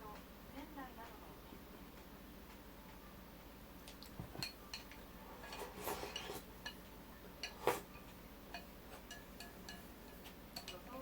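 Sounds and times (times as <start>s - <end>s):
dishes and utensils clinking: 4.2s - 11.0s.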